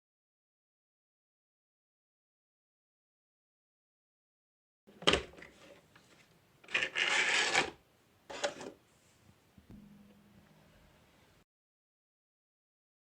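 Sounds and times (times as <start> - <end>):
faint steady hum: 7.8 - 11.4.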